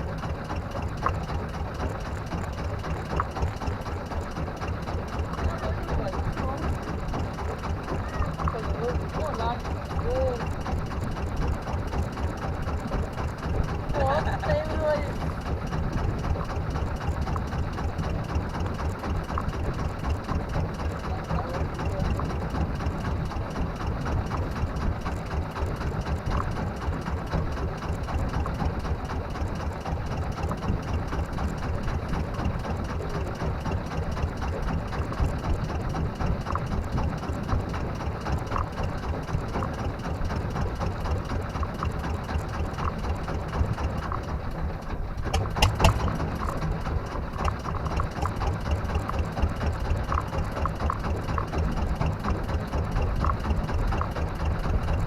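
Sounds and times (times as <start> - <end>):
boat engine chugging: 0.0 - 55.0
sharp knocks: 45.2 - 46.6.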